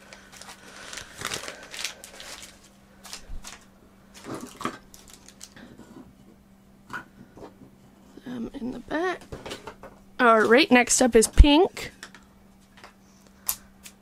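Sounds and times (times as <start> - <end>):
plastic packaging crinkling: 0.0 - 5.6
faint steady hum: 0.0 - 14.0.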